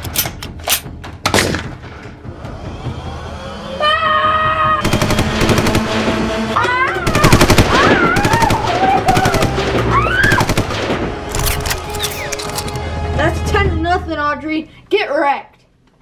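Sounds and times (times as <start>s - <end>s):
rapid machine-gun fire: 4.8s - 6.3s, 7.0s - 11.0s.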